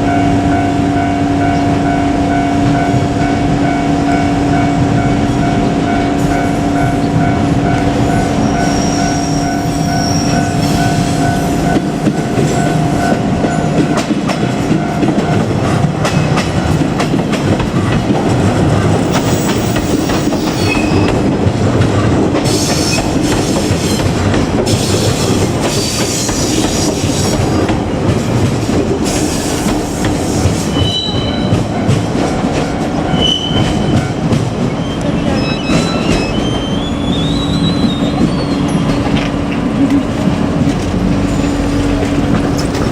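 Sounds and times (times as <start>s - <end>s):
train wheels clacking on rail joints: 1.4s - 42.9s
high-pitched wheel squeal: 8.0s - 11.7s, 19.1s - 21.2s, 30.7s - 31.6s, 33.1s - 34.1s, 34.7s - 39.3s.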